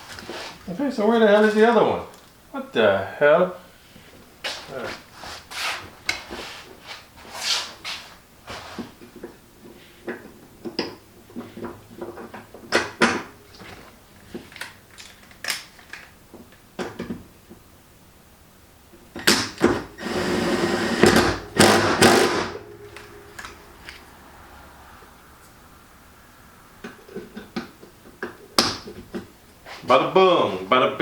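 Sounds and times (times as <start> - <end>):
small power tool running: 20.0 - 22.6.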